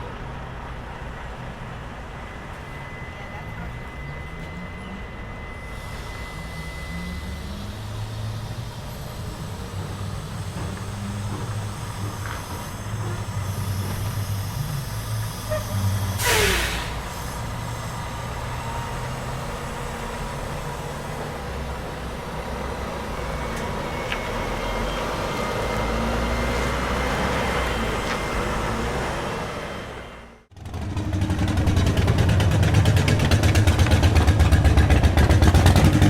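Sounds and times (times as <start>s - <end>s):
traffic engine rumble: 0.0s - 36.0s
loud hiss of air: 5.7s - 18.4s.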